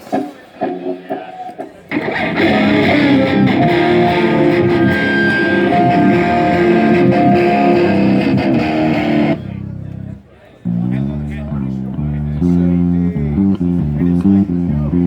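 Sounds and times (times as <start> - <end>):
electric guitar chords: 1.9 - 15.0.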